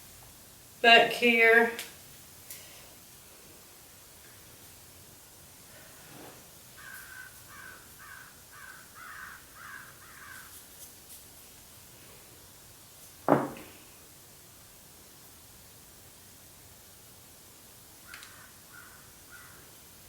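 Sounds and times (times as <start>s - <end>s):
crow cawing: 6.8s - 10.6s, 18.1s - 19.6s
sharp knock: 13.3s - 13.7s.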